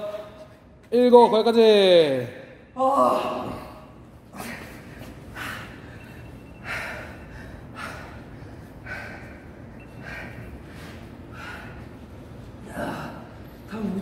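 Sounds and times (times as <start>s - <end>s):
man breathing hard: 4.3s - 13.6s.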